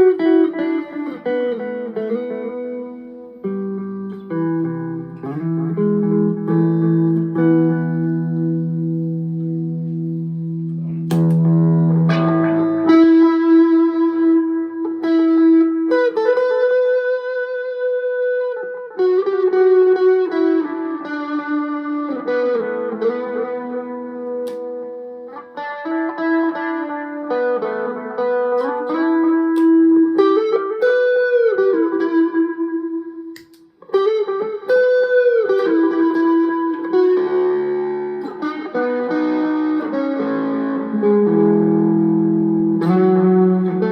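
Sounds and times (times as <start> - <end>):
electric guitar melody: 0.0 - 43.9.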